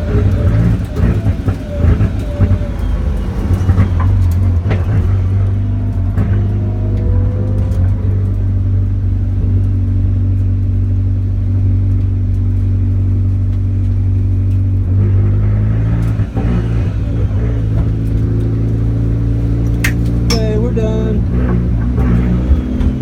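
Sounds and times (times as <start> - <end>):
car engine droning: 0.0 - 23.0
clicks and knocks: 19.6 - 20.6.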